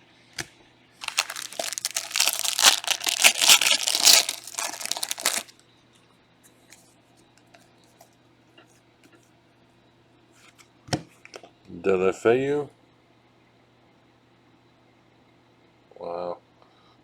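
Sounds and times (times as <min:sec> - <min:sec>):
cards clicking and rustling: 0:01.0 - 0:05.5
wrapper tearing and crinkling: 0:01.0 - 0:05.5.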